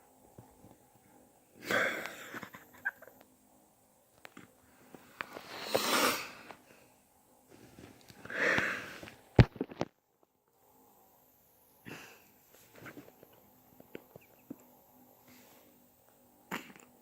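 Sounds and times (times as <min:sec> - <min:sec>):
loud breaths or sniffs: 0:04.8 - 0:07.0, 0:08.2 - 0:09.2, 0:15.2 - 0:15.8.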